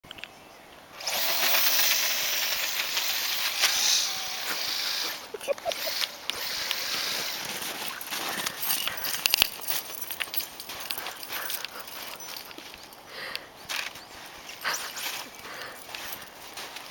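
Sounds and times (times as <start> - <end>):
electric motor and drivetrain: 1.0 - 8.0
tyres churning snow: 1.0 - 12.5.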